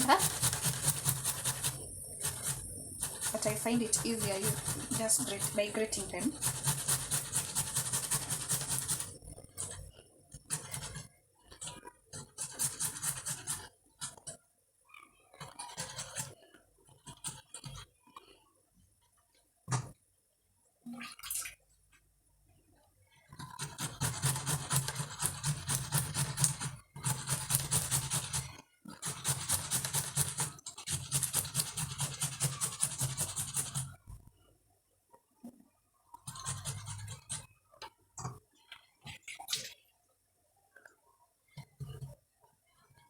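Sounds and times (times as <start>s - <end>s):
tomatoes scraped on hand grater: 0.0s - 14.3s, 15.4s - 16.4s, 23.4s - 34.0s, 36.3s - 37.5s.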